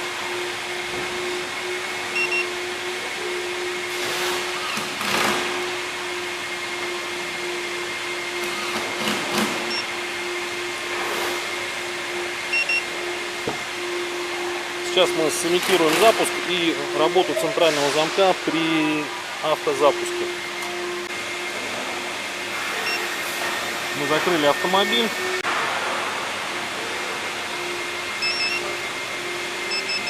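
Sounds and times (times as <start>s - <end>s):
blower whirring hum: 0.0s - 30.0s.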